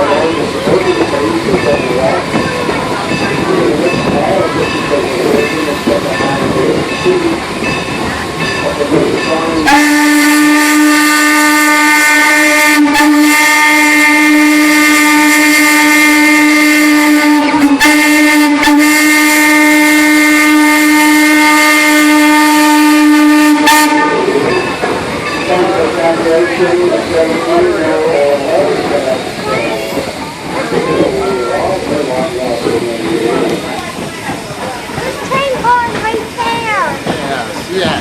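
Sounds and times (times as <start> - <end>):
train running noise: 0.0 - 38.0
steam locomotive whistle: 9.6 - 24.4.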